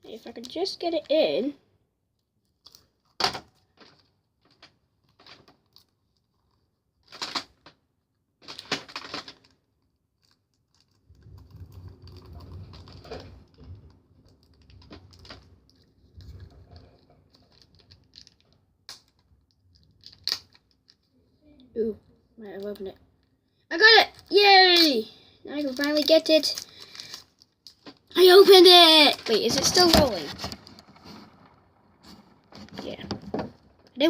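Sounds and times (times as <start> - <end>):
crackly scrapes: 8.4 - 21.4, 22.6 - 34.0
package rubbing and handling: 28.2 - 33.4.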